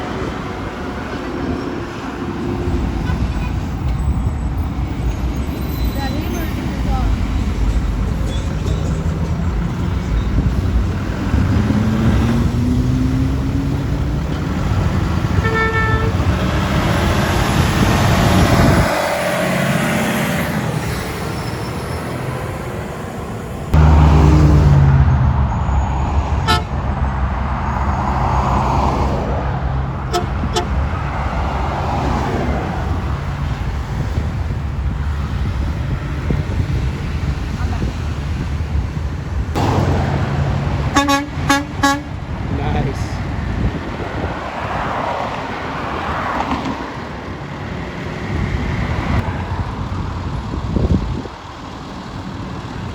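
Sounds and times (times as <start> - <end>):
garbage truck engines running: 0.0 - 24.0, 49.4 - 52.9
loud deep engine sound: 6.6 - 44.4
horn toot: 15.3 - 16.5, 26.4 - 26.8, 30.1 - 30.8, 40.8 - 42.2.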